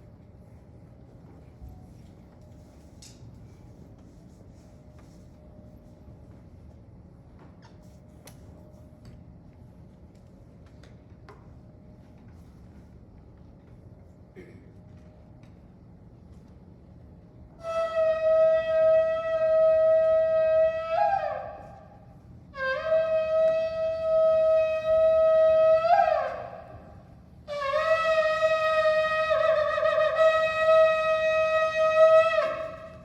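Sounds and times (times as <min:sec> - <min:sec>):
shofar blowing long calls: 0:17.6 - 0:33.0.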